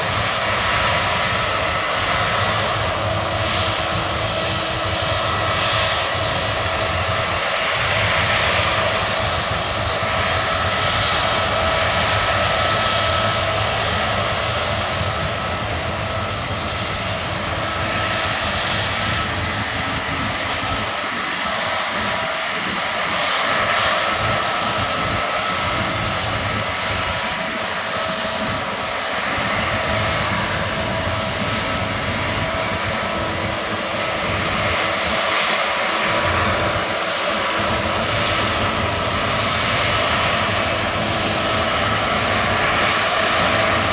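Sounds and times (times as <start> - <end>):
combine harvester running: 9.5 - 22.1.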